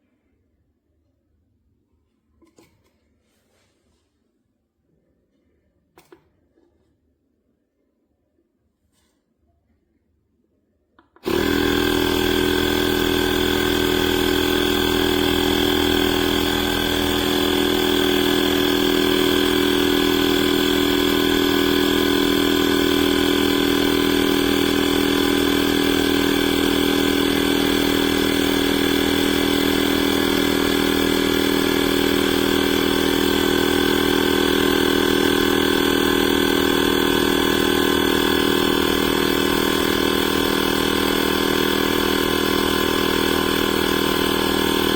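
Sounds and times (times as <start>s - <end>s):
air compressor droning hum: 11.2s - 44.9s.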